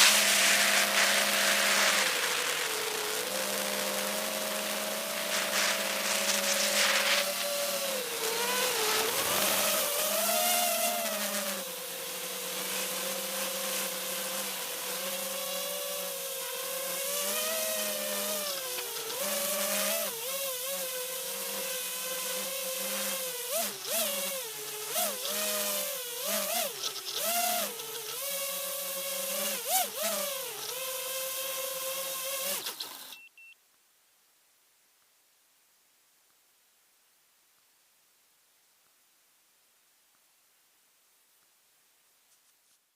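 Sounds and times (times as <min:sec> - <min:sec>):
wind hiss: 0:00.0 - 0:11.0
quadcopter motors whining: 0:00.0 - 0:33.2.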